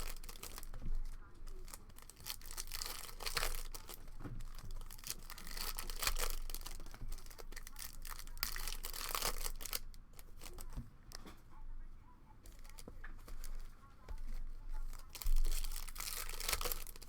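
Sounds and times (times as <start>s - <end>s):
card pack wrappers tearing: 0.0s - 0.9s, 1.5s - 10.8s, 14.9s - 17.0s.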